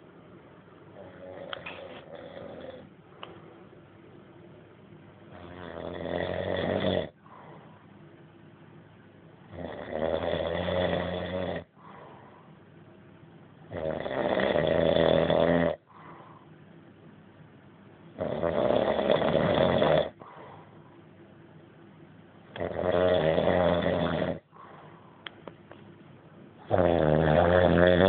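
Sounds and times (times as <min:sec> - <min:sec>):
quiet breathing: 0:00.9 - 0:03.8, 0:07.1 - 0:08.3, 0:11.6 - 0:13.0, 0:15.8 - 0:16.9, 0:20.1 - 0:21.6, 0:24.3 - 0:25.8
man snoring: 0:01.0 - 0:02.9, 0:05.4 - 0:07.2, 0:09.5 - 0:11.7, 0:13.7 - 0:15.8, 0:18.2 - 0:20.2, 0:22.6 - 0:24.5, 0:26.7 - 0:28.0.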